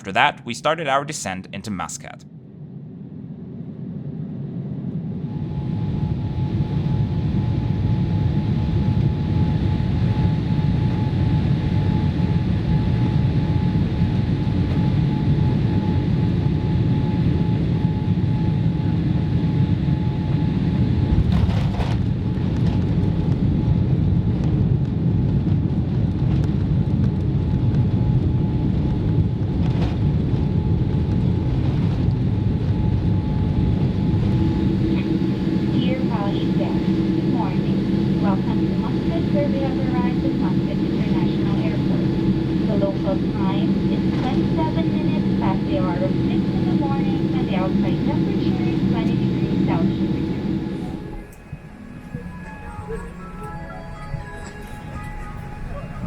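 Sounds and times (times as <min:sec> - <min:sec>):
airliner engine rumble: 0:00.0 - 0:56.0
thin steady tone: 0:34.2 - 0:56.0.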